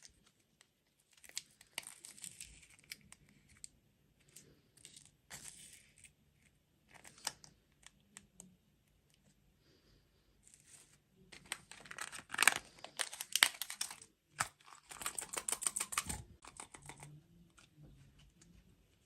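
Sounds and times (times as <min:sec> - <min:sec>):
wrapper crinkling and tearing: 0:11.4 - 0:17.0.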